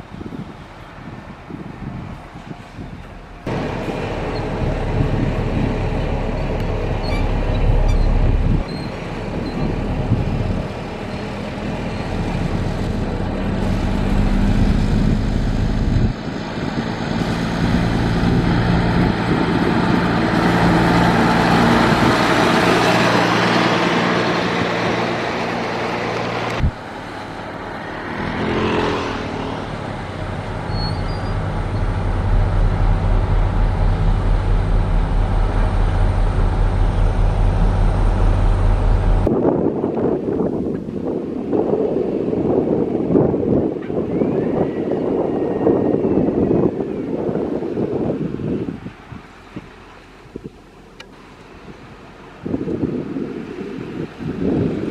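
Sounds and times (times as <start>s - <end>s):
diesel machinery engine running: 0.0s - 39.3s.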